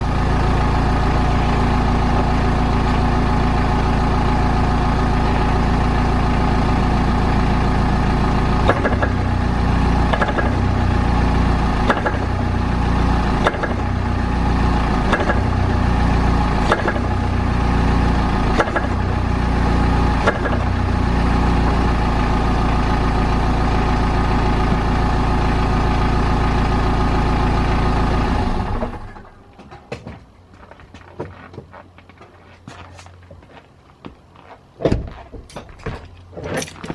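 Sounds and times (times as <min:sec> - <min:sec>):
car engine droning: 0:00.0 - 0:30.5
clunks from car rear: 0:34.8 - 0:36.9.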